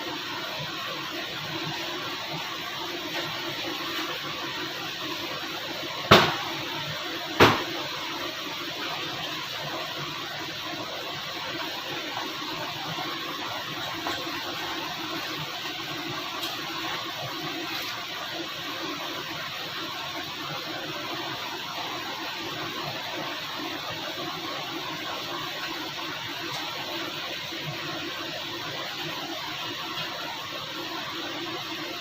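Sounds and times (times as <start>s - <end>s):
sharp knocks: 6.1s - 6.6s, 7.4s - 7.8s.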